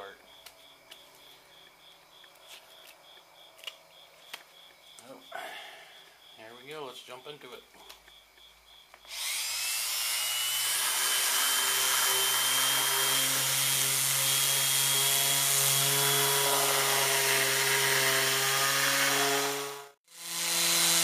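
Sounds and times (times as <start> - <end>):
electric sander sanding wood: 9.1 - 21.0.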